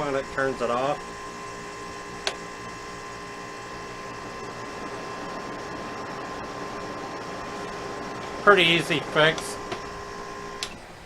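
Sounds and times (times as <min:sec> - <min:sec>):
air conditioner humming: 0:00.0 - 0:11.0
fan speed switch click: 0:02.2 - 0:02.4.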